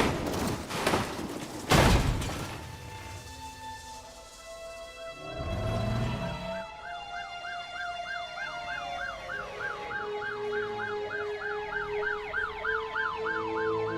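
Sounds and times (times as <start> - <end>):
steady siren tones: 4.8 - 13.9
siren rising and falling: 5.6 - 13.9
siren yelping rapidly: 6.6 - 13.9.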